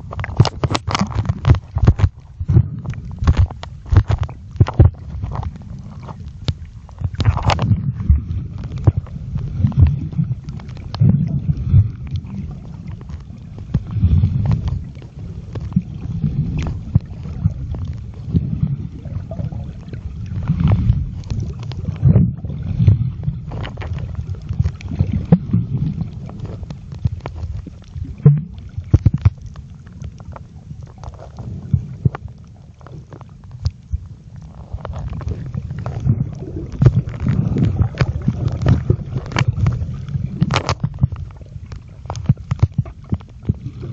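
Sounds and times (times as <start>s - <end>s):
underwater rumble and sloshing: 0.0s - 43.9s
sharp clicks and knocks: 0.1s - 2.3s.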